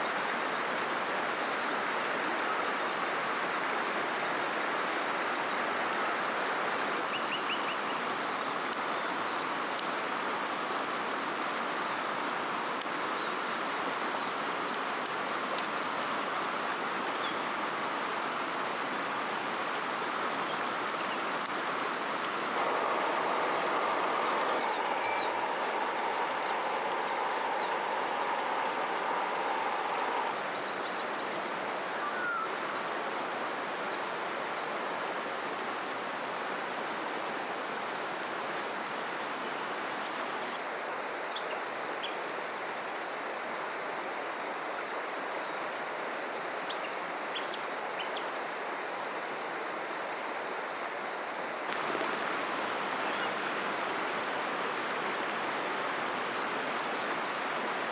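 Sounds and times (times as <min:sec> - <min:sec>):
river flowing: 0:00.0 - 0:33.4, 0:46.9 - 0:57.9
steady hum: 0:22.4 - 0:30.6
bird chirps: 0:22.6 - 0:31.0.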